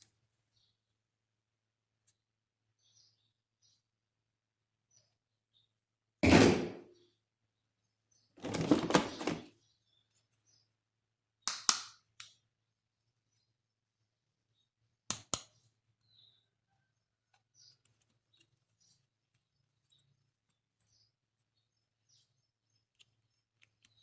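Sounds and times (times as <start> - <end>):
loud knock: 6.2 - 6.9
plastic toys and packaging handled: 8.4 - 9.6.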